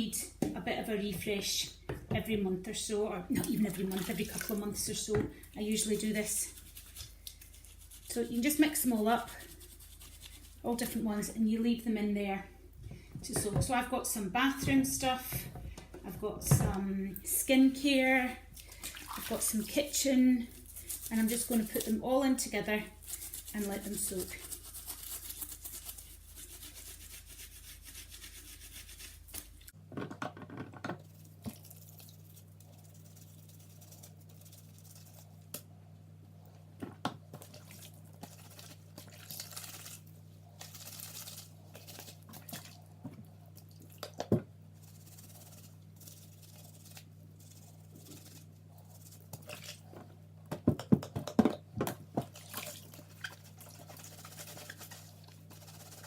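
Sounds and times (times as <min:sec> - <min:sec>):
water drips and splashes: 0:18.6 - 0:19.7.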